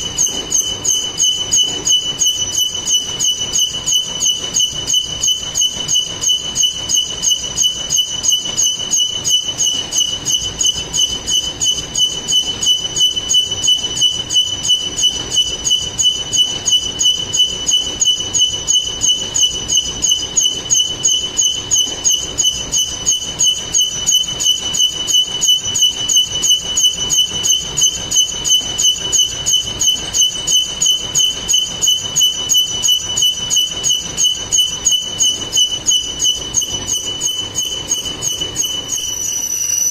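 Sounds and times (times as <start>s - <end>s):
metalworking machine whining: 0.0s - 39.9s.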